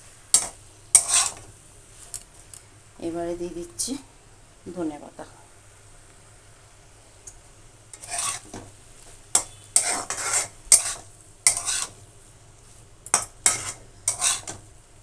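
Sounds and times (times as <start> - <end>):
spatula scraping and stirring curry: 0.3 - 1.5, 7.9 - 14.8.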